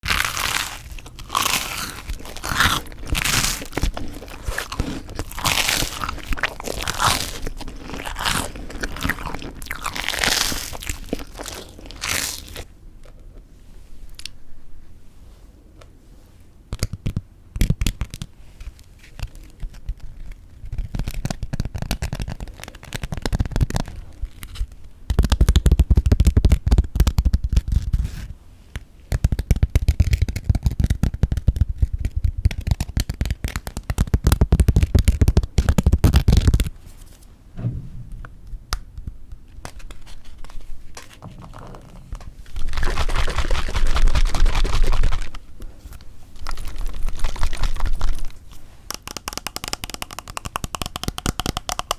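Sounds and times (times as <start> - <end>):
crunching toasted bread: 0.0 - 12.6.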